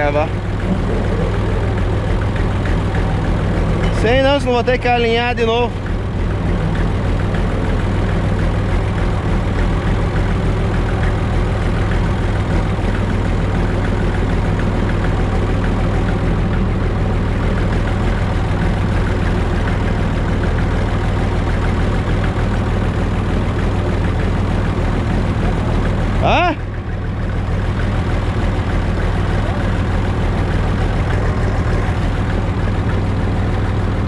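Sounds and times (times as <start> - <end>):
tractor diesel engine idling: 0.0 - 34.0.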